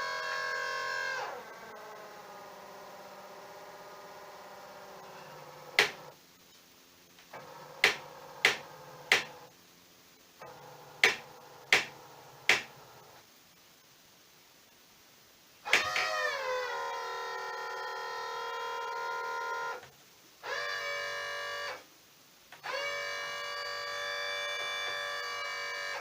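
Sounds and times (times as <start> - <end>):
electric pump motor humming: 0.0 - 6.2, 7.3 - 9.5, 10.4 - 13.1, 20.4 - 21.8, 22.6 - 26.0.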